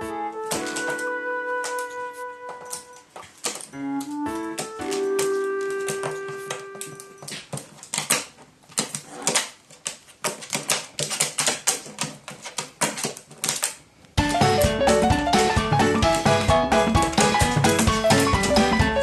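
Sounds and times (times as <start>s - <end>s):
held keyboard chord: 3.8s - 7.2s, 14.2s - 19.0s.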